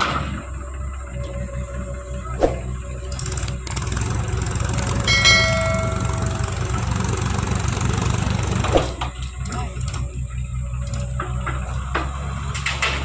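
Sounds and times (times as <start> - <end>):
diesel engine running: 0.0 - 13.0
metal clang: 5.1 - 6.8.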